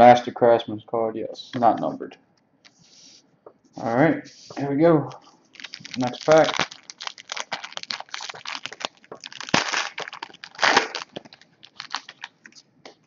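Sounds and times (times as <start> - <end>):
wrapper tearing and crinkling: 5.5 - 12.7.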